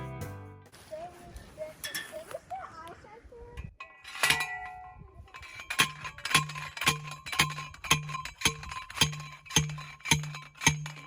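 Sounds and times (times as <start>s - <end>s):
post driver clanging on steel post: 3.7s - 11.0s.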